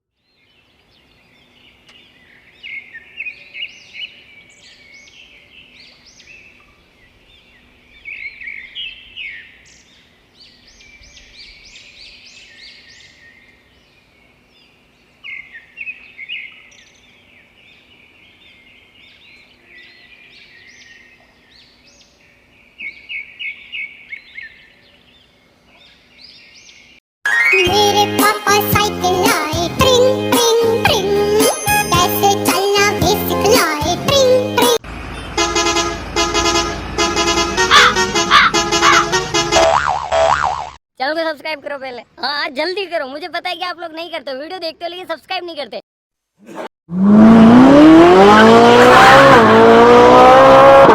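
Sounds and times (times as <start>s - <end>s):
birds chirping and singing: 0.2s - 27.0s.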